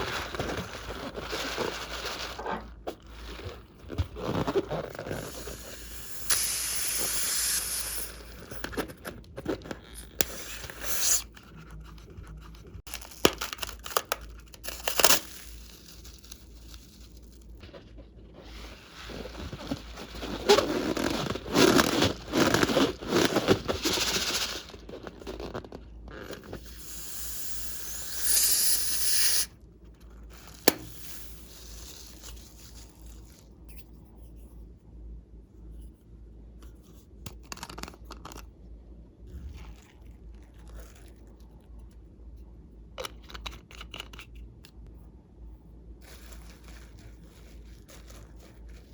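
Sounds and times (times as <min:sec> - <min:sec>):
slime hissing: 0:05.3 - 0:08.4, 0:26.6 - 0:29.5.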